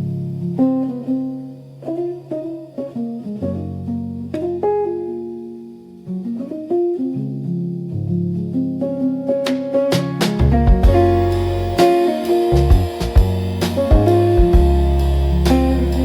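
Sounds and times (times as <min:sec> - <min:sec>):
plucked guitar melody: 0:00.0 - 0:16.0
sustained low bass notes: 0:10.4 - 0:16.0.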